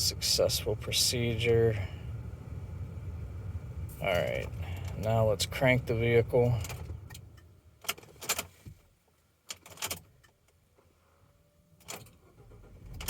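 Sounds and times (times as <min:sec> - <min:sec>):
car keys jangling and clicking: 0:06.5 - 0:08.6, 0:09.5 - 0:10.5.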